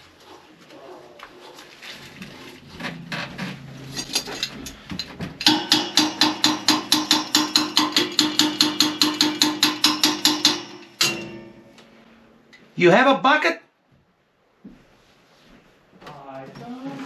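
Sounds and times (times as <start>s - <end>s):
hammer striking metal: 2.6s - 12.2s.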